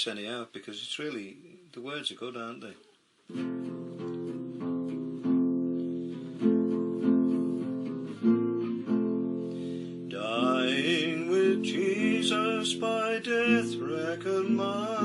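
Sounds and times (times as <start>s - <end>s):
acoustic guitar strumming: 3.3s - 15.0s
man singing: 10.1s - 15.0s.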